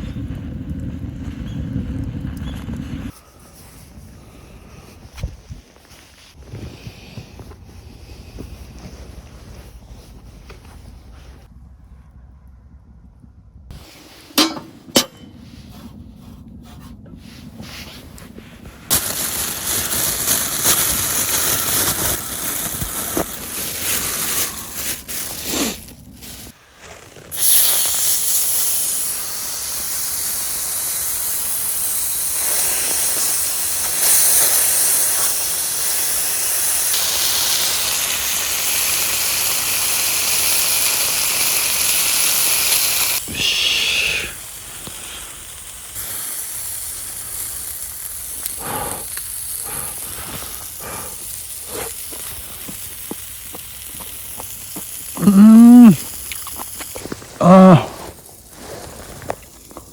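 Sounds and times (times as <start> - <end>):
food sizzling over wood fire: 17.6 - 59.9.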